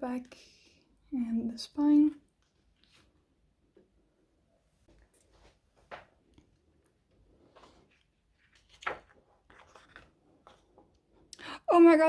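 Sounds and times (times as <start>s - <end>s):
paper and card rustling: 7.4s - 11.0s.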